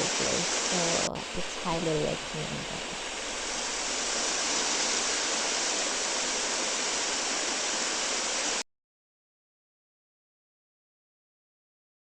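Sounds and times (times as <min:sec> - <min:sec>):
river water rushing: 0:00.0 - 0:08.6.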